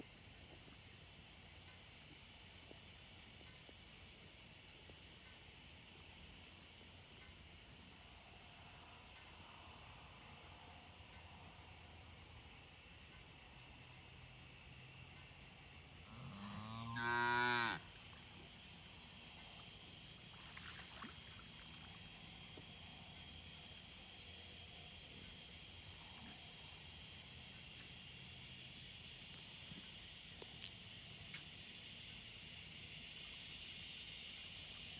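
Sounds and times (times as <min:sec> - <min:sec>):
insects buzzing: 0:13.6 - 0:34.9
cow mooing: 0:16.1 - 0:17.8.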